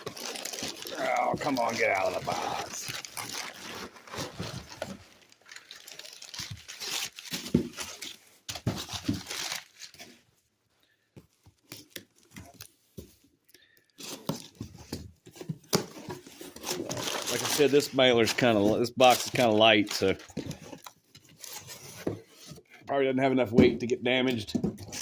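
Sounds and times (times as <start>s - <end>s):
cardboard and paper tearing: 0.0s - 10.2s, 16.0s - 20.3s.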